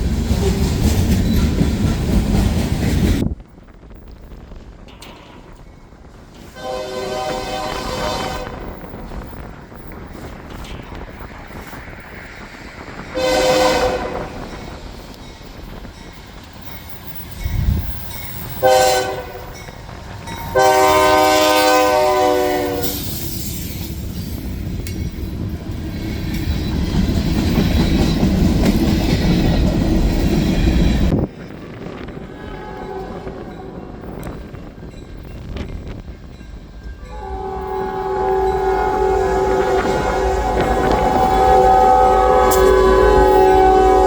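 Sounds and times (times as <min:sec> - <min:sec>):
low rumble of passing train: 0:00.0 - 0:44.0
train air horn blasts: 0:06.5 - 0:08.8, 0:13.1 - 0:14.5, 0:18.6 - 0:19.5, 0:20.4 - 0:23.1, 0:32.5 - 0:33.8, 0:37.0 - 0:44.0.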